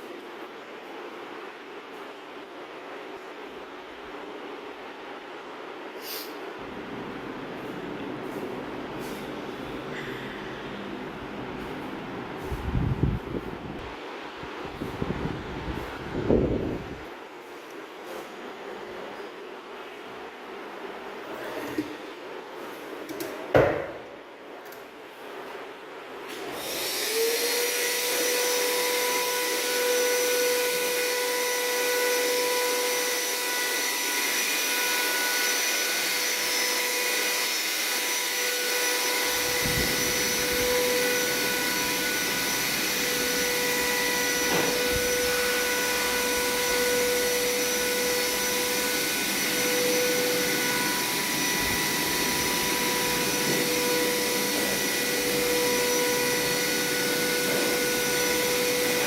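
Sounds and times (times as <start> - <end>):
electric motor whine: 26.5 - 59.0.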